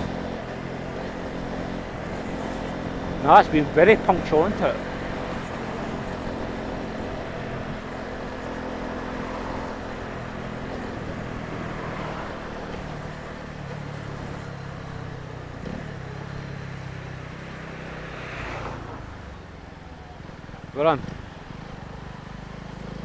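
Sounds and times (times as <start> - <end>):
motorcycle engine running: 0.0 - 23.0.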